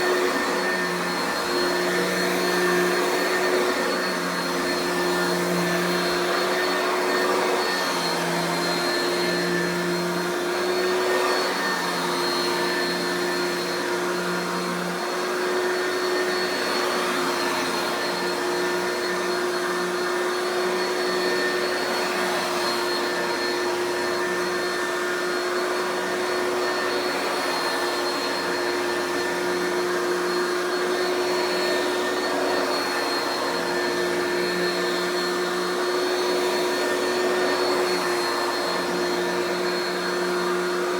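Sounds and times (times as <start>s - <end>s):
vacuum cleaner running: 0.0s - 40.9s.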